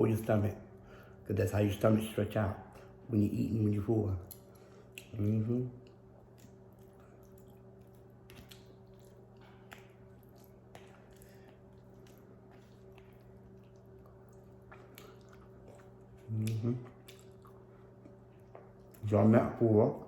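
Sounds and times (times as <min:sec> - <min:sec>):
steady low hum: 0:00.0 - 0:20.0
faint chewing: 0:04.1 - 0:19.1.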